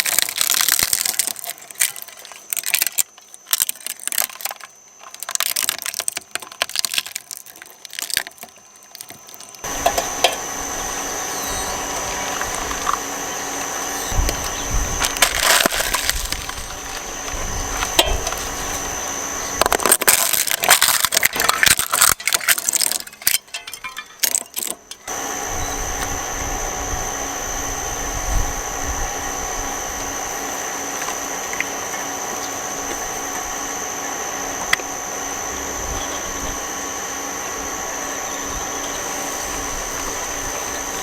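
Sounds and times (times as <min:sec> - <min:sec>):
motor hum and high whine: 0:00.0 - 0:41.0
shredder crunching material: 0:00.0 - 0:41.0.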